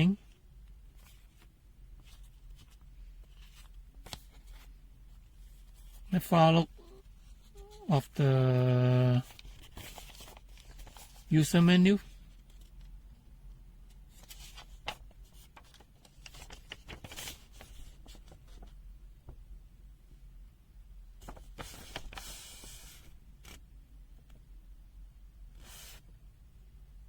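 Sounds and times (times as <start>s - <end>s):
handling rustle: 9.2s - 11.4s.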